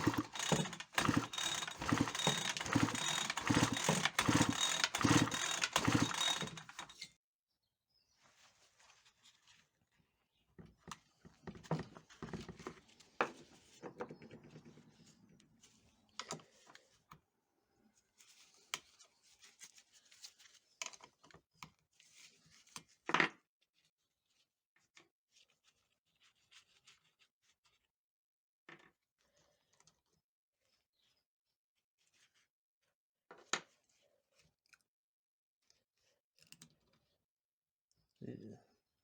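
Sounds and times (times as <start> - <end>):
tools clicking and rattling: 0.0 - 7.1.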